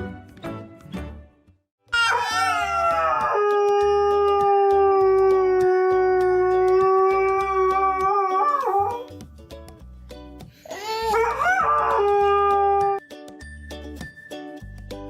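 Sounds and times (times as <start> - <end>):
dog howling: 2.0 - 9.0, 10.9 - 13.0.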